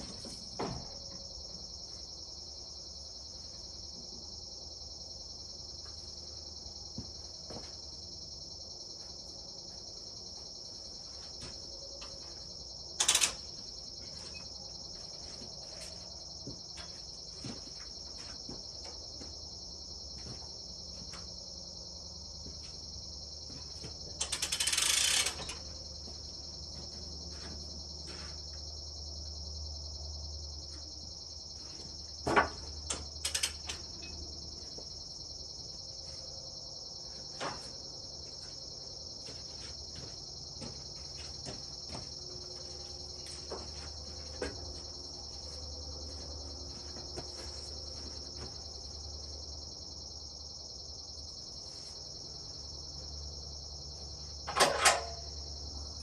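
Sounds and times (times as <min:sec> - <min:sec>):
high-pitched insect chorus: 0:00.0 - 0:56.0
faint clicks and knocks: 0:32.8 - 0:34.2.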